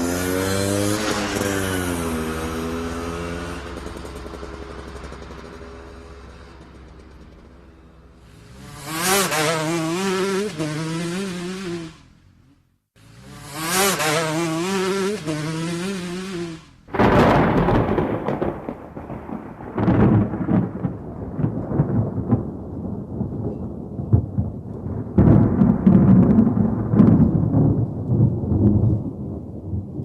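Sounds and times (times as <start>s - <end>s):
thunder cracking and rumbling: 16.9s - 30.0s.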